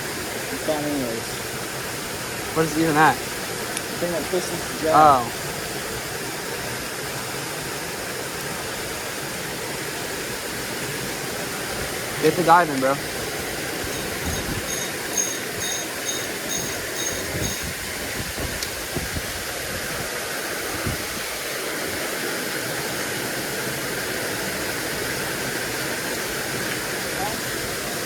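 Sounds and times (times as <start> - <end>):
water rushing over spillway: 0.0 - 28.0
high ticks: 13.8 - 17.8
wind buffeting microphone: 13.8 - 21.3.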